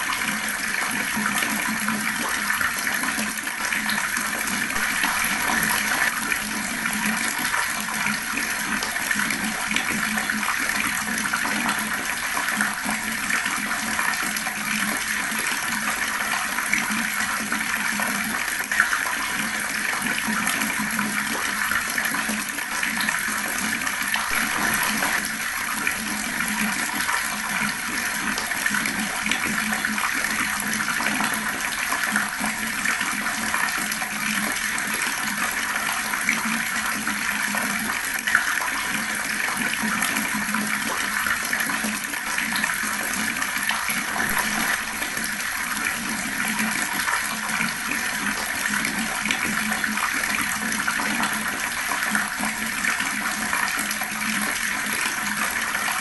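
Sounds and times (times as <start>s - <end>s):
water tap running: 0.0s - 56.0s.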